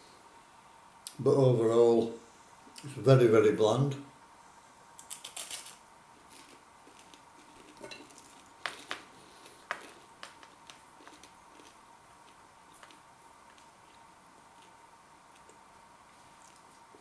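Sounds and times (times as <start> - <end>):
crunchy chewing: 6.3 - 17.0.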